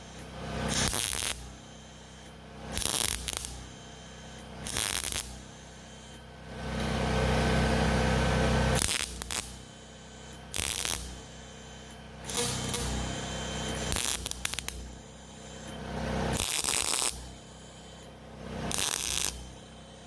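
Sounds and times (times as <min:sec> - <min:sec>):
welding crackle: 0:00.1 - 0:01.7, 0:02.7 - 0:06.2, 0:08.2 - 0:09.6, 0:10.4 - 0:11.4, 0:12.2 - 0:19.6.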